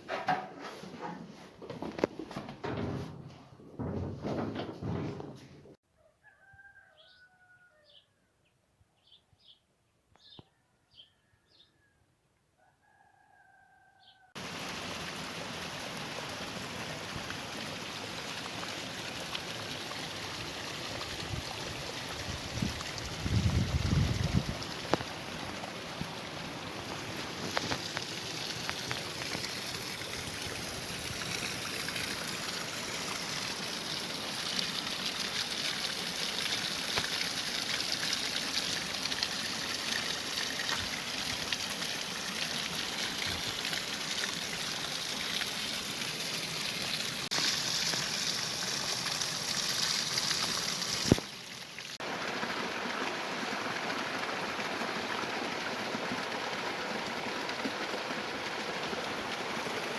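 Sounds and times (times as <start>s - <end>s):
running water rushing: 14.4s - 59.9s.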